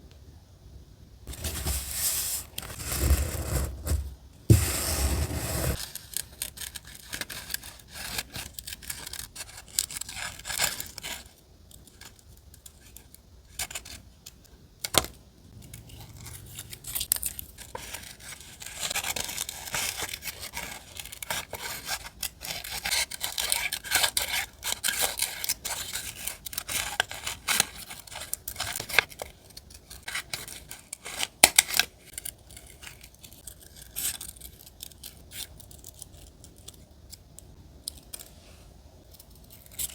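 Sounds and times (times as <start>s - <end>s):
scratchy rubbing: 1.3s - 5.8s.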